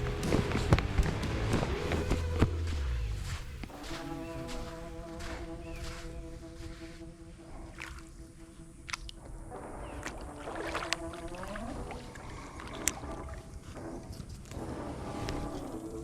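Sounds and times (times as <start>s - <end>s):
background music with held notes: 0.0s - 16.0s
water sloshing and splashing: 8.9s - 15.7s.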